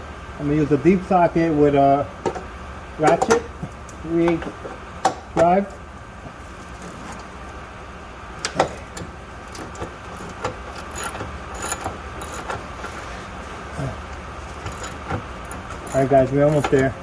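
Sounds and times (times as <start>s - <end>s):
steady low hum: 0.0s - 17.0s
ratchet and socket clinking: 9.5s - 13.0s, 14.6s - 16.8s.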